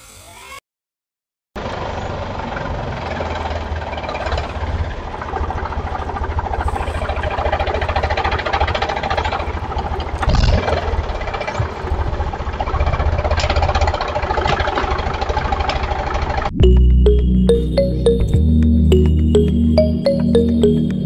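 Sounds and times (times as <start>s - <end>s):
small concrete mixer rattling: 2.2s - 16.5s.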